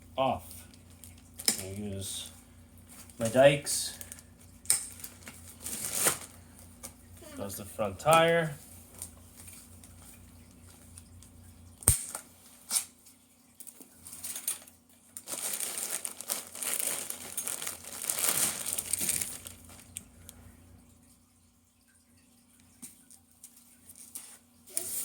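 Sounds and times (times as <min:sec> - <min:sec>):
packaging padding crinkling: 0:04.8 - 0:07.0, 0:15.2 - 0:20.1.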